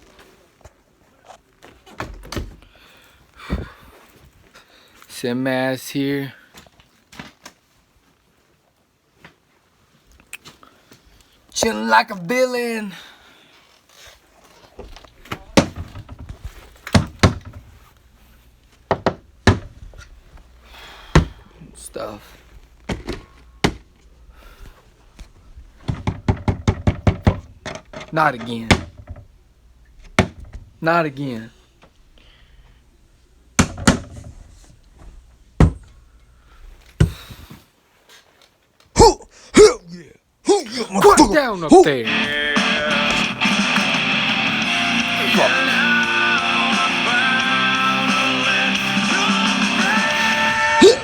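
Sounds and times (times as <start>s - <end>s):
heavy banging thuds: 15.4s - 17.9s, 18.8s - 20.0s, 20.8s - 21.5s, 25.7s - 29.3s, 35.6s - 36.0s.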